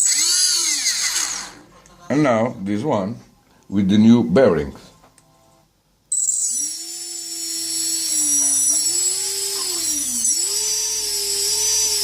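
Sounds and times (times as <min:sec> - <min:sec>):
drone motor high whine: 0:06.2 - 0:12.0.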